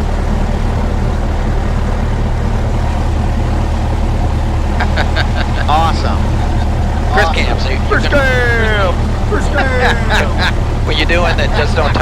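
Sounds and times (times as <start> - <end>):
airplane propeller engine droning: 0.0 - 12.0.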